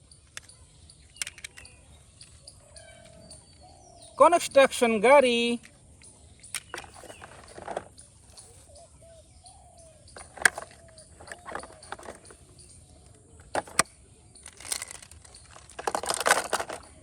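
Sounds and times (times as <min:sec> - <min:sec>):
plastic toys clicking: 0:00.2 - 0:02.4, 0:06.4 - 0:07.9, 0:10.1 - 0:12.6, 0:13.4 - 0:17.0
plastic toys rattling: 0:00.3 - 0:01.7, 0:06.4 - 0:08.4, 0:10.1 - 0:12.6, 0:13.4 - 0:17.0.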